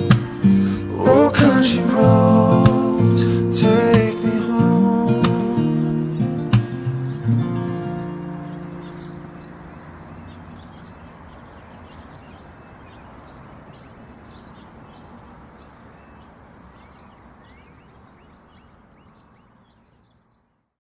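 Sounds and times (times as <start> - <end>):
guitar chord: 0.0 - 9.7
steady background hiss: 0.0 - 20.4
small birds chirping: 0.0 - 20.8.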